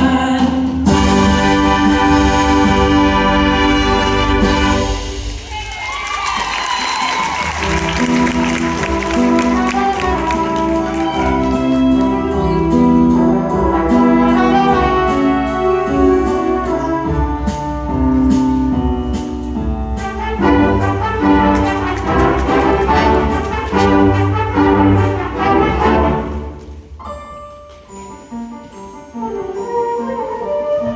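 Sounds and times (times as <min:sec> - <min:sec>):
wind ensemble with brass chords: 0:00.8 - 0:05.3, 0:07.3 - 0:27.0, 0:29.1 - 0:30.9.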